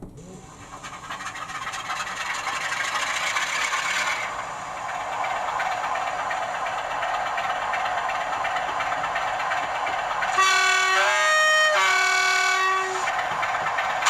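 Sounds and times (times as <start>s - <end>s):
model train diesel engine sound: 0.0s - 14.0s
two-tone train horn: 10.3s - 13.1s.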